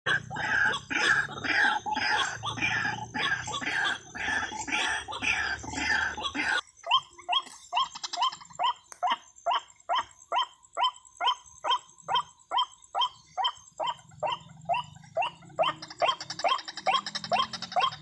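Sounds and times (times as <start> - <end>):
waterhen calling: 0.1 - 8.8.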